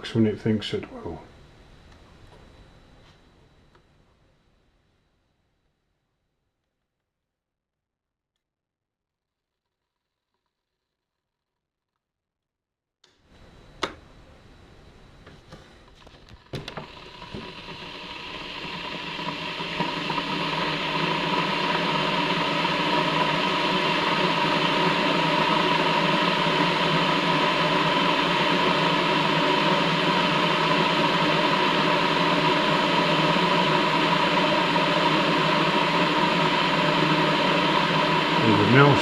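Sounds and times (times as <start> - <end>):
kettle water heating hiss: 13.1 - 39.0
kettle switch clicks: 13.8 - 14.0.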